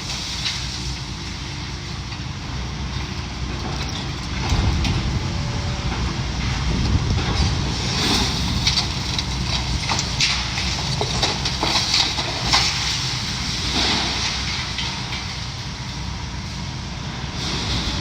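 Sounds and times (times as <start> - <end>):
demolition machinery rumbling: 0.0 - 18.0
debris and metal clanking: 1.9 - 15.4.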